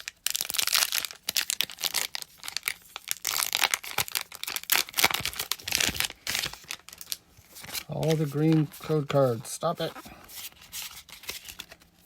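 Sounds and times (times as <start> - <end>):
foil wrapper crinkling and tearing: 0.0 - 12.0.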